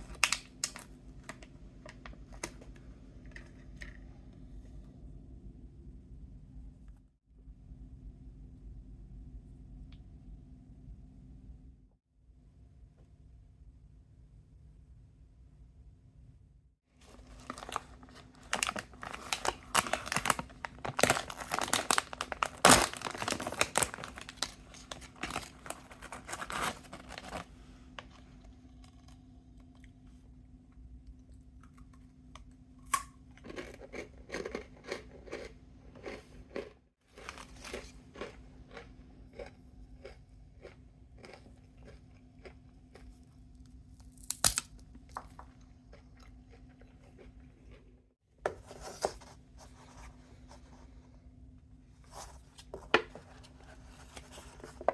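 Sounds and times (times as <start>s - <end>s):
plastic packaging crinkling: 17.0s - 27.5s.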